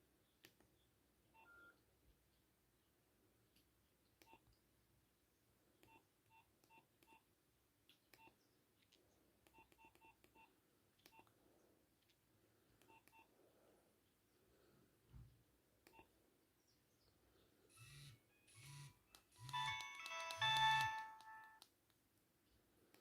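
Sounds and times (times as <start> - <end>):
phone key beeps: 18.6 - 21.6
button clicks: 19.4 - 21.7.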